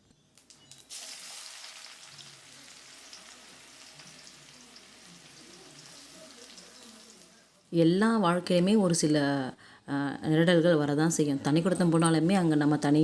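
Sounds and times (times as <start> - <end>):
food sizzling in a pan: 0.7 - 7.6.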